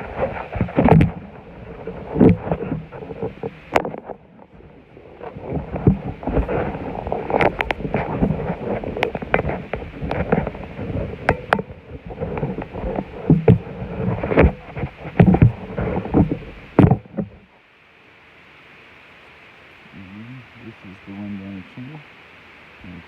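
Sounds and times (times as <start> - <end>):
scraping on roof shingles: 0.0 - 17.4.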